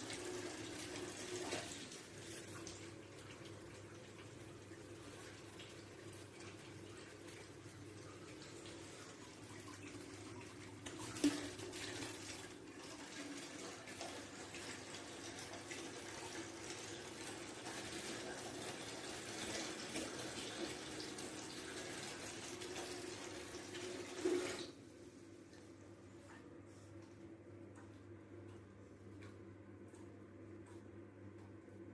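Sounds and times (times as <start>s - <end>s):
water running from a tap: 0.0s - 24.8s.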